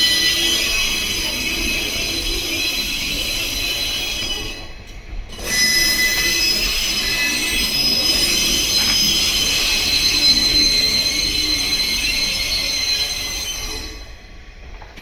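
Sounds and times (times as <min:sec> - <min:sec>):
train wheels squealing: 0:00.0 - 0:14.7
low train rumble: 0:00.0 - 0:15.0.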